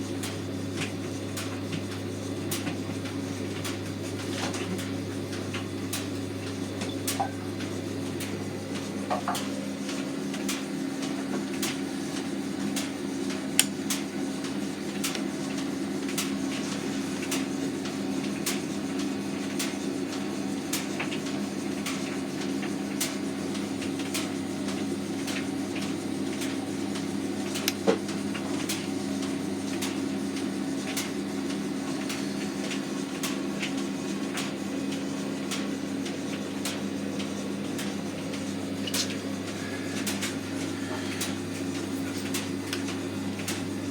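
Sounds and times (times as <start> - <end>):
tumble dryer motor hum: 0.0 - 43.9
dryer drum clicks and knocks: 0.1 - 16.3.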